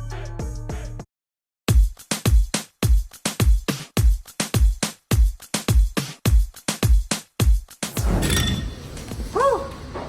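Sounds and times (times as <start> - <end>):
dance track with kick drum: 1.7 - 7.7.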